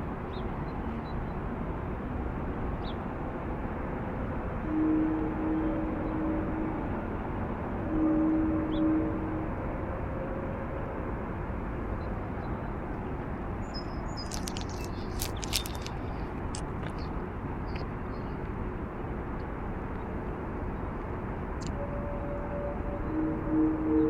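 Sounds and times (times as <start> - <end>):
distant highway traffic: 0.0 - 24.0
bird chirps: 13.6 - 15.8.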